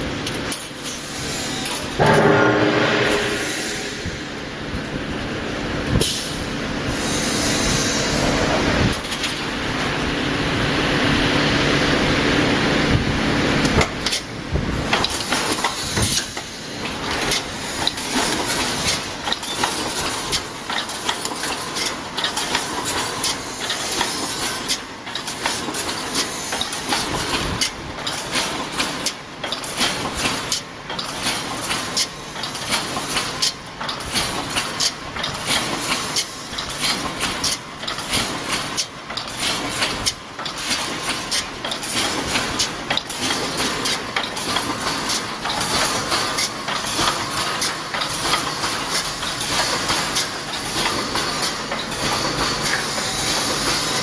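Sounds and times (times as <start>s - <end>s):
machine clicks and clanks: 0.0s - 5.0s, 5.6s - 7.2s, 8.2s - 10.2s, 12.9s - 54.0s
hiss: 6.0s - 8.4s, 26.1s - 27.0s, 47.3s - 54.0s.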